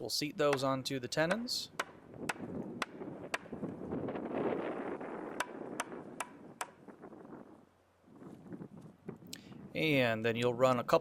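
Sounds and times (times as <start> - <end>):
rubber mallet knocking wood: 0.5 - 3.7, 5.3 - 6.8.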